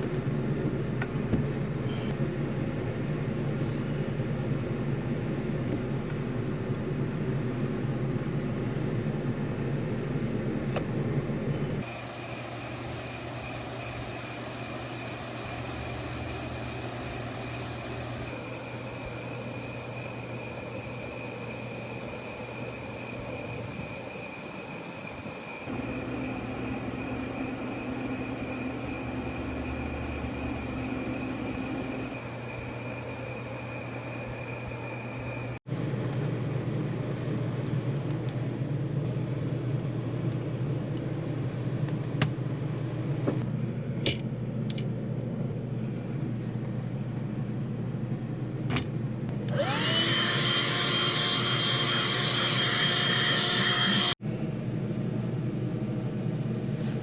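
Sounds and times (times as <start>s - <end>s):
air conditioner fan hum: 0.0s - 57.0s
high motor whine: 11.8s - 35.6s, 49.3s - 54.2s.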